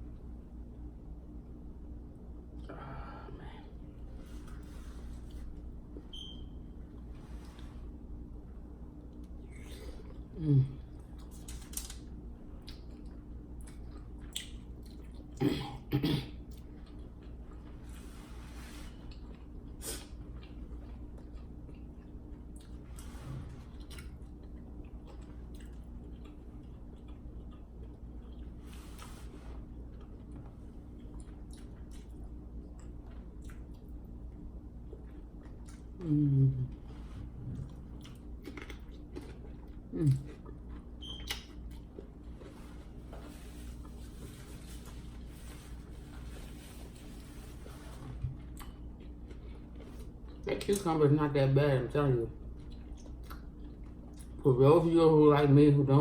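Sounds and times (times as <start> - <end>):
low steady hum: 0.0 - 56.0
person chewing food: 6.8 - 15.4, 16.4 - 50.9, 52.4 - 54.4
person humming mm: 10.3 - 10.9, 36.0 - 36.8, 39.9 - 40.3.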